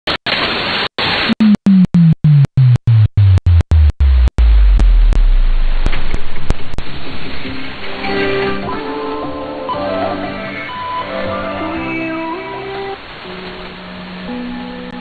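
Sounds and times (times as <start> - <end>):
radio static hiss: 0.1 - 1.6
low tone stepping down: 1.3 - 7.3.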